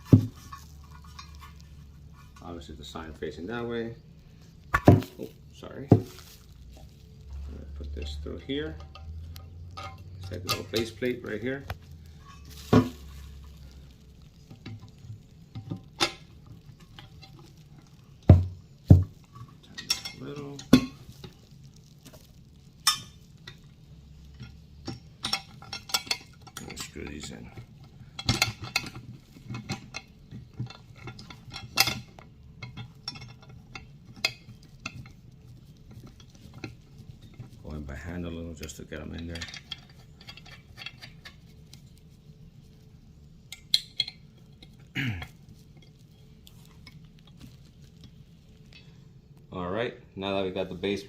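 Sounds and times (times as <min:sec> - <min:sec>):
metal screws clicking and clinking: 0:38.6 - 0:41.8.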